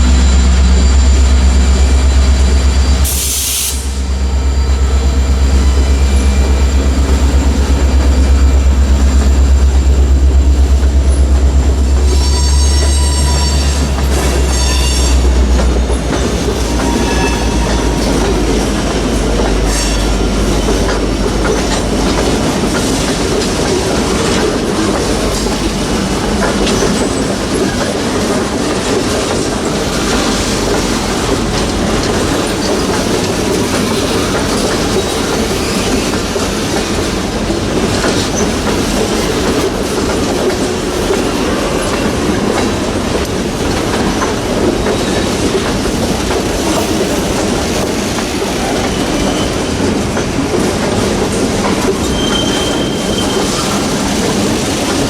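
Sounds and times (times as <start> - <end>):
locomotive engine rumble: 0.0 - 3.2, 3.8 - 55.0
train wheel clatter: 5.2 - 55.0
wheel squeal: 16.6 - 18.7, 51.7 - 54.1.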